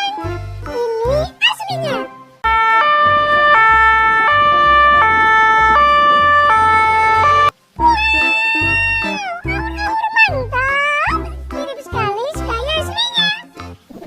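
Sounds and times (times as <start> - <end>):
two-tone ambulance siren: 2.5 - 7.5.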